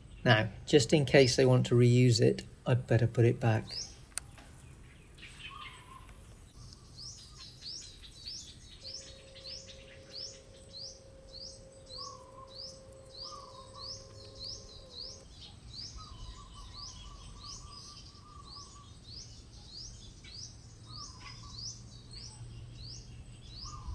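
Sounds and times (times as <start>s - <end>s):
high rising bird chirp: 3.0s - 23.9s
lower bird trilling call: 5.0s - 23.9s.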